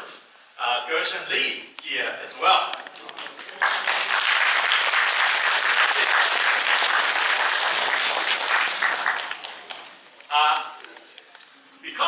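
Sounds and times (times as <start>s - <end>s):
crowd applauding: 3.0s - 10.0s.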